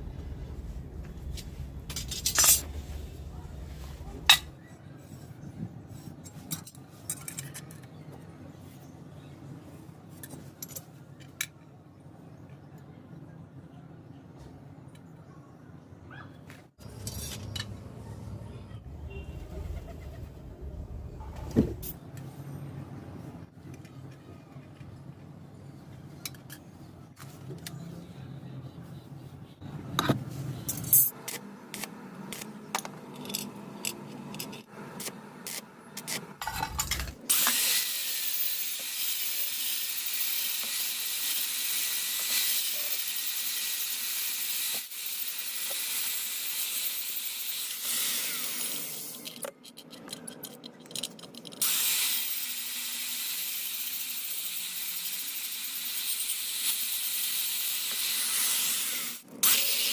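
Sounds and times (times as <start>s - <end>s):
arc welding hiss: 37.3s - 49.1s, 51.6s - 59.9s.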